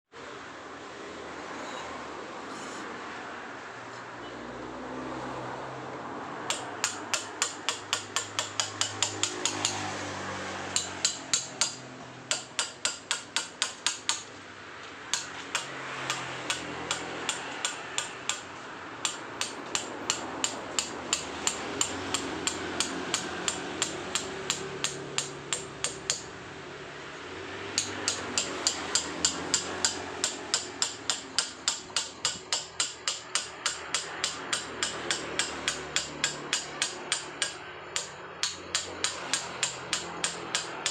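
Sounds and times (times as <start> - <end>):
hammer striking chisel on stone: 6.5 - 9.9, 10.7 - 14.3, 15.1 - 26.3, 27.8 - 40.9.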